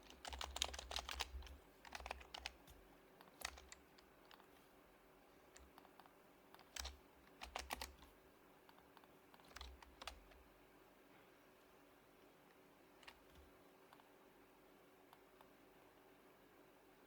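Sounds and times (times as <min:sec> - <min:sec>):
quiet keyboard typing: 0:00.0 - 0:04.6, 0:05.4 - 0:10.5, 0:12.9 - 0:14.1.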